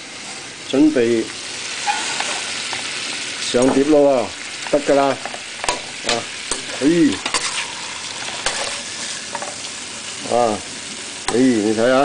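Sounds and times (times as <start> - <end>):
food sizzling in a pan: 0.0 - 12.0
utensil scraping a pan: 1.8 - 3.0, 4.6 - 9.7.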